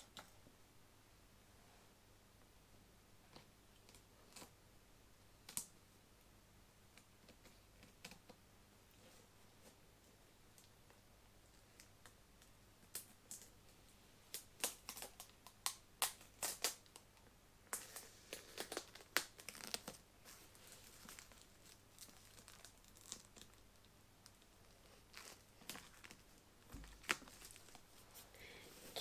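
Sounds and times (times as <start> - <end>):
plastic packaging crinkling: 17.7 - 29.0.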